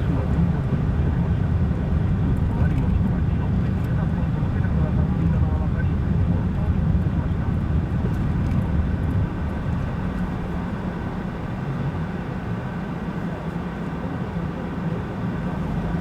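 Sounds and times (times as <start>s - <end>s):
car interior road rumble: 0.0s - 12.3s.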